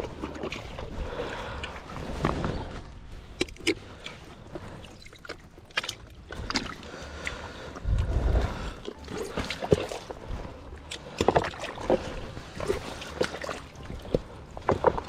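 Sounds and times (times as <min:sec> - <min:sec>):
water splashing and sloshing: 0:00.0 - 0:15.0
low rumble: 0:06.0 - 0:12.8.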